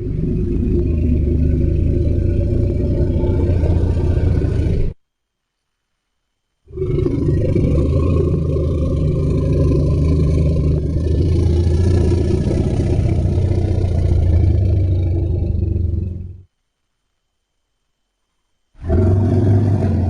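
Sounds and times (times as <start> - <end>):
deep rumbling creature call: 0.0 - 5.0, 6.7 - 16.5, 18.8 - 20.0.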